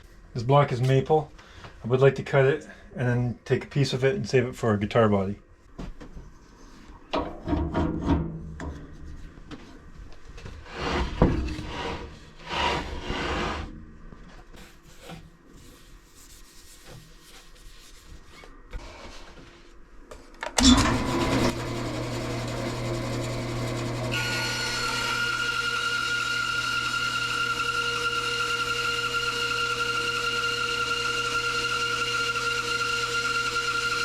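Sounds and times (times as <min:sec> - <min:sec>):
bandsaw motor humming: 0:20.6 - 0:34.0.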